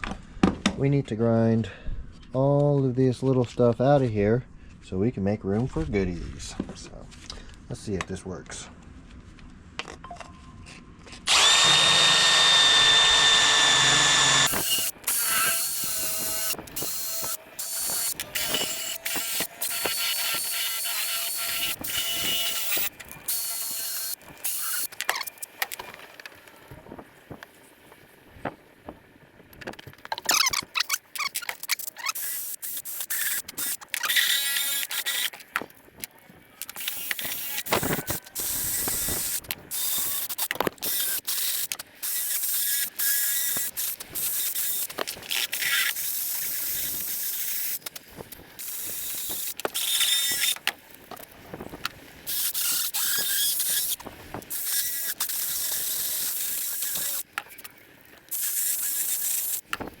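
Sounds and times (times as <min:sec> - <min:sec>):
power grinder grinding plastic: 0:11.3 - 0:26.6, 0:30.2 - 0:35.7, 0:36.6 - 1:00.0.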